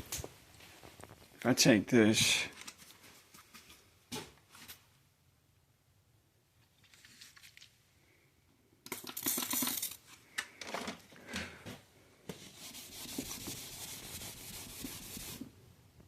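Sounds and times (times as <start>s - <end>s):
scraping rub: 12.4s - 15.5s.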